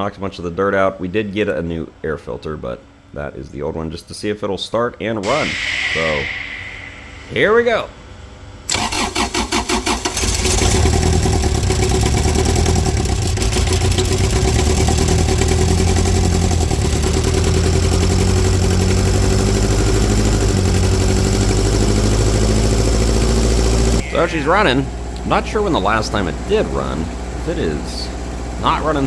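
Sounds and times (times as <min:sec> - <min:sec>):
diesel generator cranking and running: 0:08.7 - 0:24.1.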